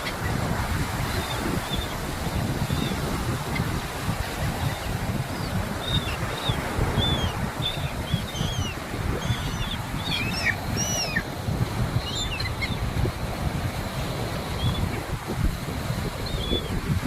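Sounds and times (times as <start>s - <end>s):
wind buffeting microphone: 0.0s - 17.0s
small birds chirping: 1.0s - 11.4s, 12.0s - 12.9s, 14.6s - 15.0s, 16.2s - 16.8s.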